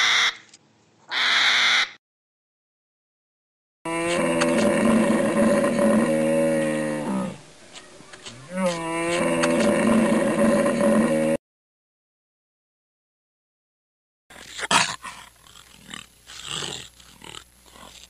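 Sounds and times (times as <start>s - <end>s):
cow mooing: 3.9s - 7.4s, 8.4s - 11.4s.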